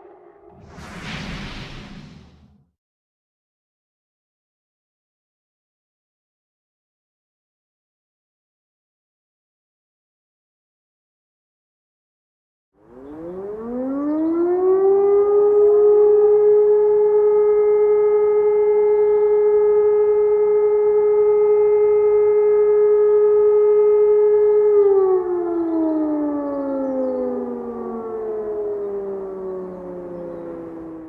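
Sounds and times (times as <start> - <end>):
motor siren: 12.8 - 31.0.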